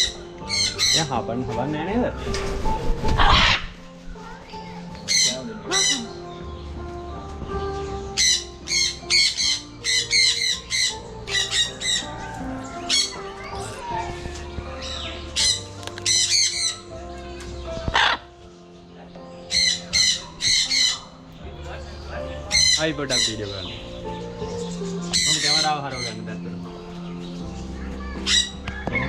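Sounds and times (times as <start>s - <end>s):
parrots squawking: 0.0s - 1.2s, 3.2s - 3.8s, 5.0s - 6.2s, 8.1s - 16.9s, 17.8s - 18.3s, 19.4s - 21.2s, 22.4s - 26.3s, 28.1s - 29.0s
background music: 0.0s - 29.0s.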